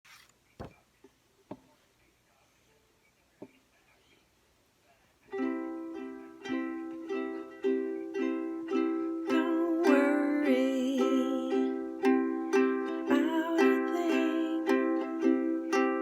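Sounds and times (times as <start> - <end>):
ukulele strumming chords: 5.3 - 16.0
person singing: 5.4 - 16.0.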